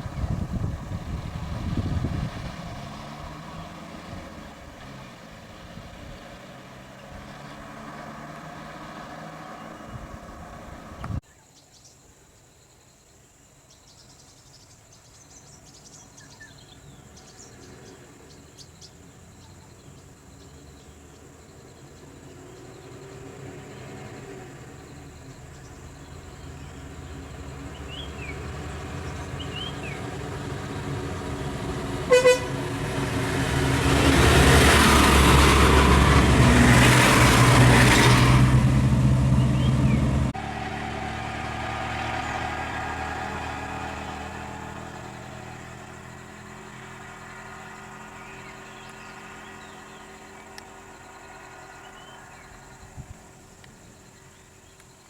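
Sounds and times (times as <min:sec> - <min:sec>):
road noise: 0:00.0 - 0:11.2, 0:14.9 - 0:55.0
vehicle engine hum: 0:00.0 - 0:11.2, 0:15.7 - 0:55.0
short horn toots: 0:32.1 - 0:32.7.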